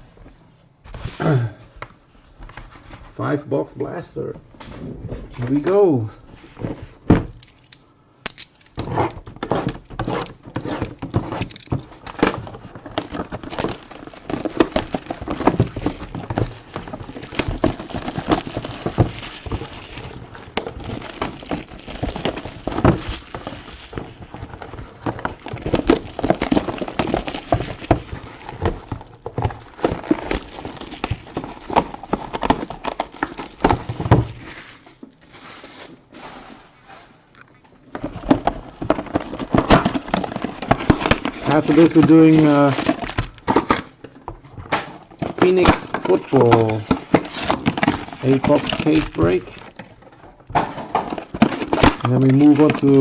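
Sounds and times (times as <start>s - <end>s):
wrappers crinkling: 8.6s - 36.1s, 38.7s - 43.7s, 45.3s - 53.0s
cardboard ripping: 8.8s - 36.0s, 38.3s - 43.8s, 45.3s - 49.8s, 50.6s - 53.0s.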